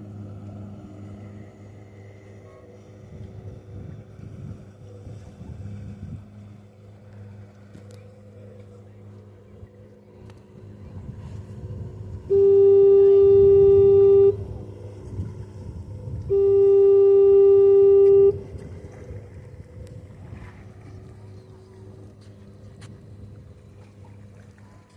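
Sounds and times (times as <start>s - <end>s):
fog horn blasts: 12.2s - 14.8s, 16.2s - 18.5s.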